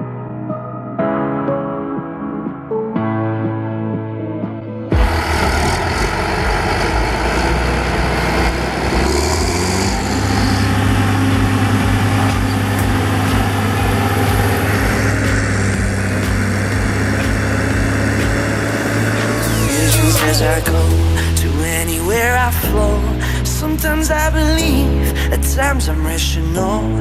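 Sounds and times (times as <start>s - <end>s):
tractor diesel engine running: 5.0s - 22.2s.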